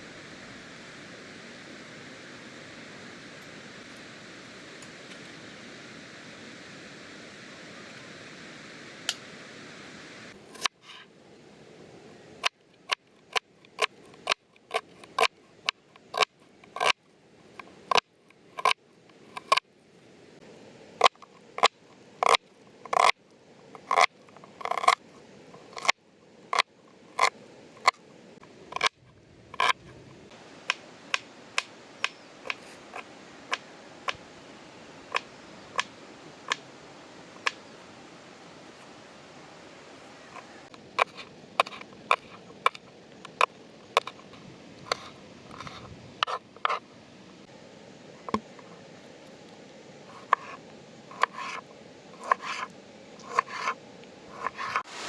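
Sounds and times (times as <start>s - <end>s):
steady rushing noise: 54.4s - 55.0s.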